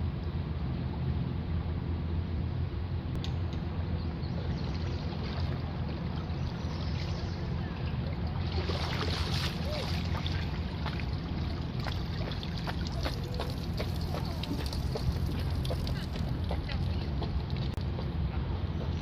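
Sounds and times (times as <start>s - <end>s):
steady low rumble: 0.0s - 19.0s
water splashing around boat: 4.2s - 18.0s.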